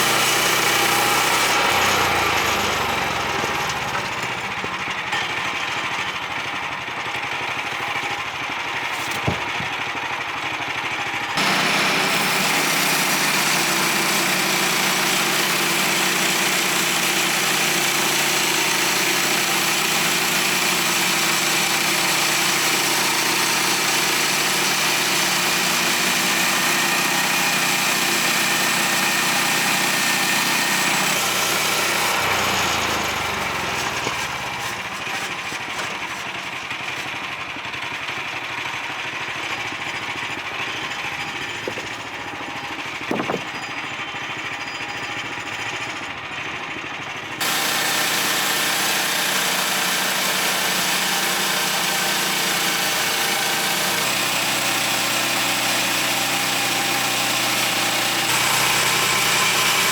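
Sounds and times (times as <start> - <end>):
band blade sawing through wood: 0.0 - 5.2, 7.5 - 9.8, 11.4 - 37.6, 47.4 - 59.9
gas engine running: 0.0 - 43.6, 47.3 - 59.9.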